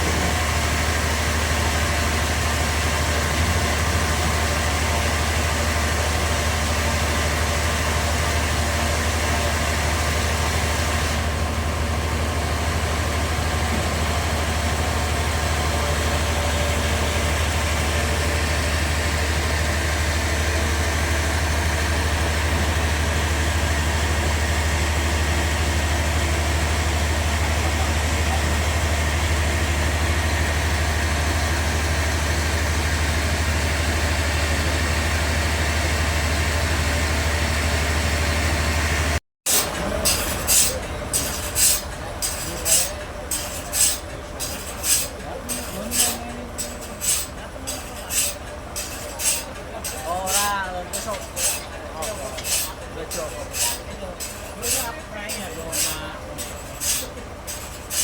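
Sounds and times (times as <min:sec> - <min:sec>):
sawmill machinery humming: 0:00.0 - 0:58.0.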